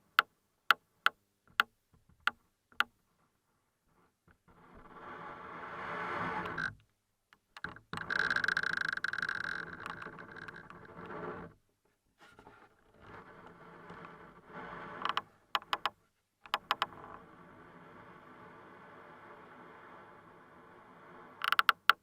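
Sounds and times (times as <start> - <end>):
soft creaking: 3.9 - 11.6, 12.2 - 20.1, 20.7 - 22.0
long squeaky creak: 6.3 - 6.8, 7.6 - 11.6, 12.8 - 15.9, 21.4 - 22.0
sharp ticks: 15.1 - 15.9, 16.5 - 16.9, 21.4 - 22.0.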